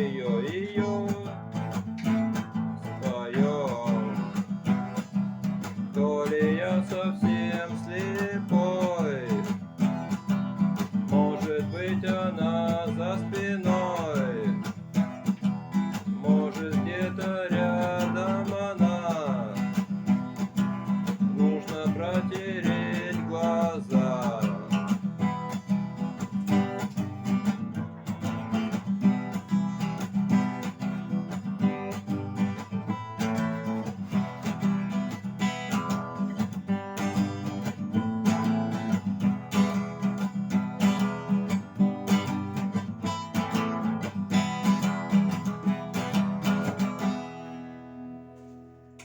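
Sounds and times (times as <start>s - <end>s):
acoustic guitar strumming chords: 0.0s - 49.0s.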